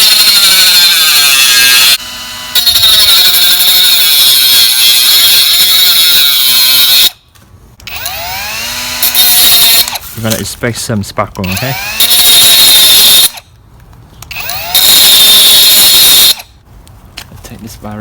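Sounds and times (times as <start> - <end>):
angle grinder cutting: 0.0 - 7.2, 7.9 - 10.2, 11.4 - 13.4, 14.3 - 16.5.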